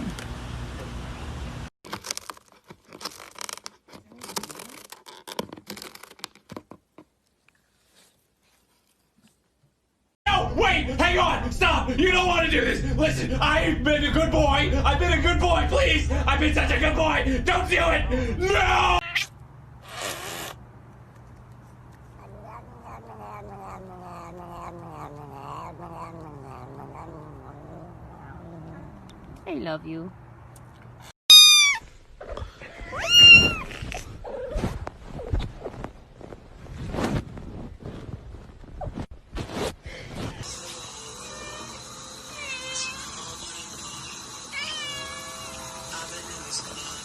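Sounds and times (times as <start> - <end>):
rustling and scratching: 1.9 - 9.7, 33.1 - 40.5
cat yowling: 19.0 - 19.3, 22.2 - 29.1, 31.3 - 31.9, 32.9 - 33.8, 44.6 - 45.6.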